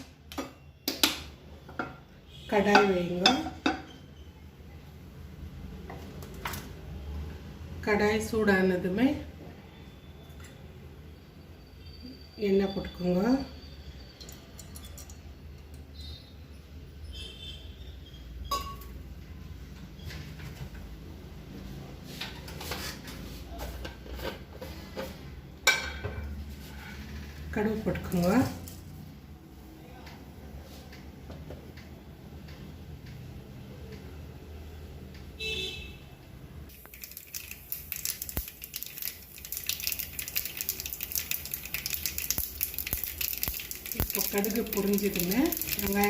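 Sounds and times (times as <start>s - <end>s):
kitchen utensils clinking: 2.7s - 4.2s, 14.2s - 15.7s, 18.5s - 19.0s
mustard seeds popping in hot oil: 36.7s - 46.0s.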